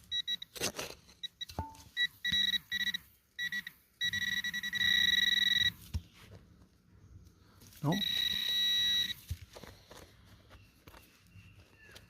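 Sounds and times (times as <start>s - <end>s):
pinpointer beeping: 0.0s - 0.5s, 1.2s - 5.8s, 7.9s - 9.2s.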